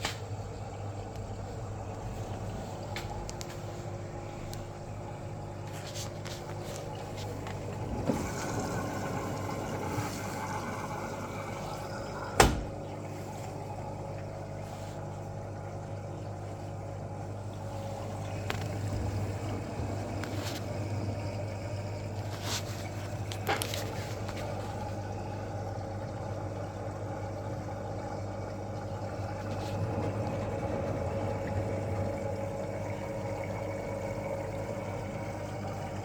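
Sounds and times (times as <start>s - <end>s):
washing machine humming: 0.0s - 36.0s.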